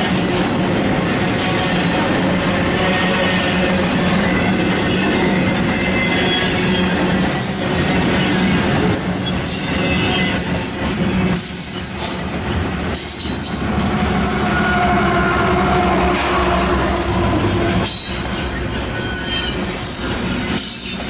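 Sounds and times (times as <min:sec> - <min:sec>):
freight train rolling on rails: 0:00.0 - 0:21.0
train wheels squealing: 0:01.4 - 0:21.0.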